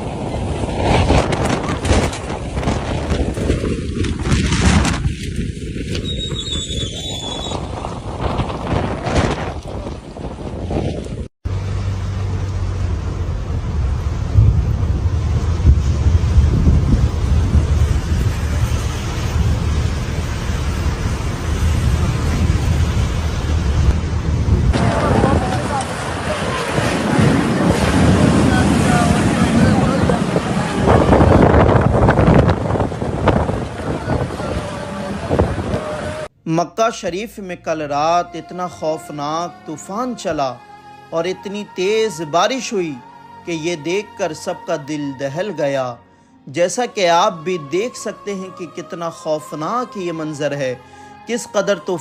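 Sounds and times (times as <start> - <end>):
strong wind gusting on microphone: 0.0 - 11.3, 13.2 - 36.3
brief high squeal: 6.0 - 7.7.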